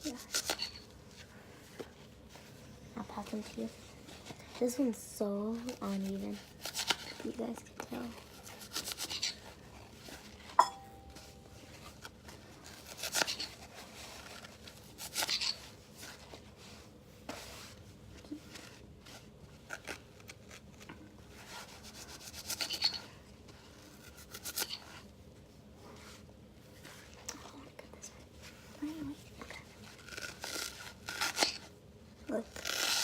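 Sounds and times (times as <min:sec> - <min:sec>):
knife sawing through foam: 0:08.3 - 0:09.5.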